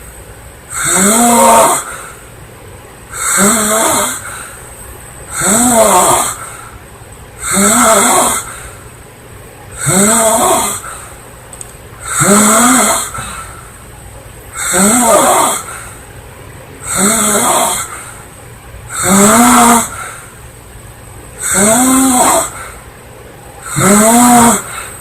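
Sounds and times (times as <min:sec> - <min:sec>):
girl snoring loudly: 0:00.8 - 0:02.0, 0:03.2 - 0:04.4, 0:05.3 - 0:06.4, 0:07.4 - 0:08.5, 0:09.8 - 0:10.9, 0:12.0 - 0:13.4, 0:14.6 - 0:15.7, 0:16.8 - 0:17.9, 0:19.0 - 0:20.0, 0:21.4 - 0:22.6, 0:23.7 - 0:24.8.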